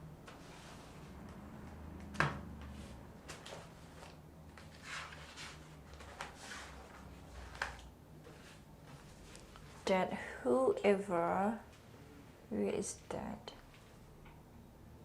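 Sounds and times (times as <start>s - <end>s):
soft rustles: 2.7s - 9.9s.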